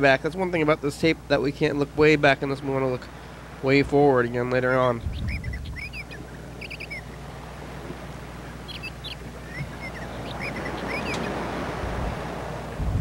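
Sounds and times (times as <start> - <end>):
steady low hum: 0.0 - 13.0
small bird chirping: 4.9 - 7.2, 8.6 - 11.3.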